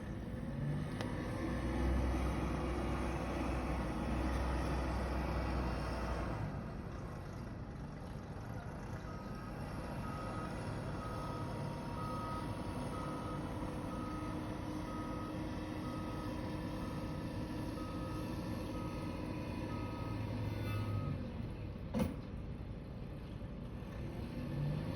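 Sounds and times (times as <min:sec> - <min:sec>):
engine and traffic noise: 0:00.0 - 0:24.9
vehicle reversing alarm beeping: 0:09.0 - 0:21.3.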